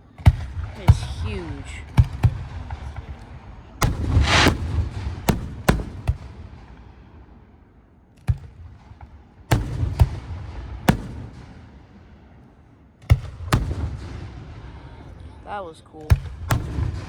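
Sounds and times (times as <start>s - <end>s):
low rumble: 2.6s - 7.6s
firework crackling burst: 3.8s - 6.5s
firework shells booming: 3.8s - 7.2s, 8.2s - 12.4s, 13.0s - 15.1s, 16.2s - 17.0s.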